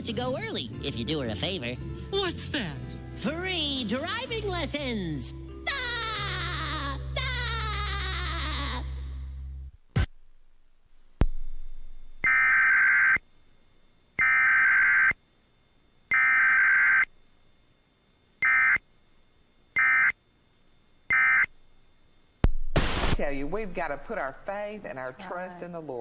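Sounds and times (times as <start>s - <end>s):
buzzing digital data bursts: 12.2s - 13.2s, 14.2s - 15.2s, 22.6s - 24.6s.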